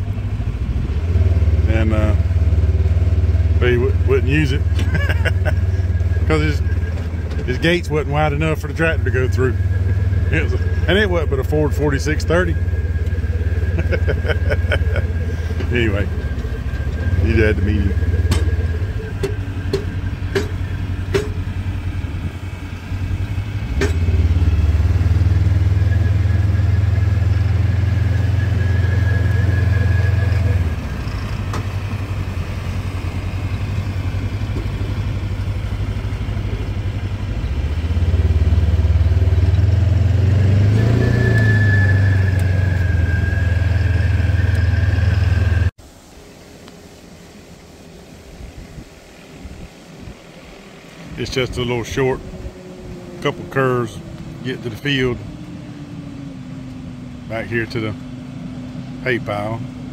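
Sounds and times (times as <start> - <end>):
farm vehicle engine running: 0.0 - 59.9.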